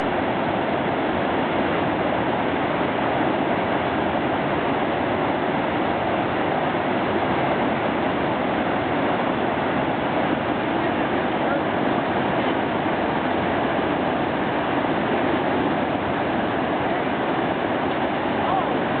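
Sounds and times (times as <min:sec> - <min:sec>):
rushing water: 0:00.0 - 0:19.0.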